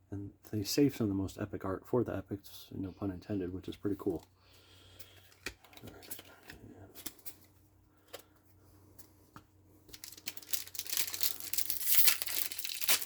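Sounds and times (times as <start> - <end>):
plastic wrapper tearing and crinkling: 9.9 - 13.0.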